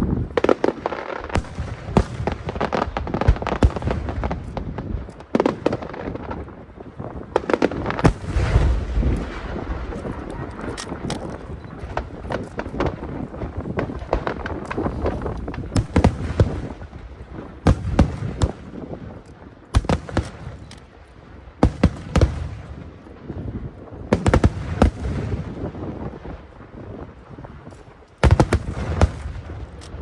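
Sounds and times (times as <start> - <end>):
firework crackling: 0.0 - 30.0
firework shells booming: 7.2 - 19.2, 28.2 - 30.0.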